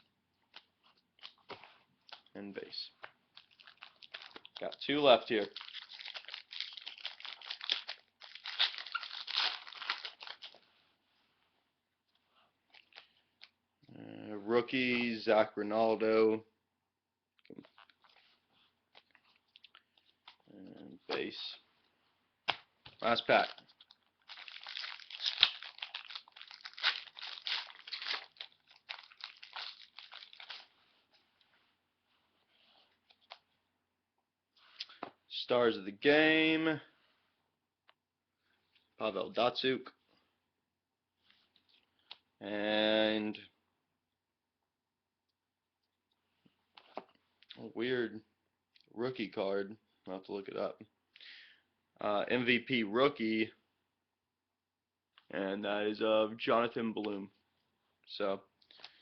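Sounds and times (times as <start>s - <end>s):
foil wrapper tearing and crinkling: 5.4s - 10.6s, 24.2s - 30.7s.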